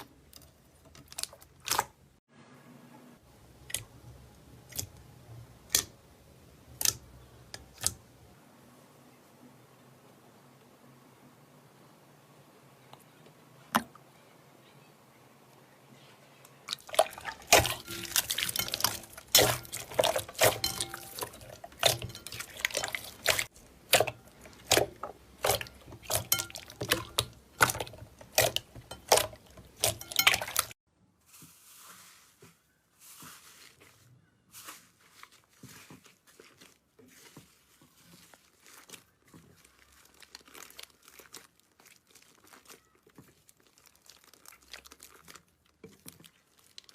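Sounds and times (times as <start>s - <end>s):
faint soft crackles: 30.6s - 46.9s.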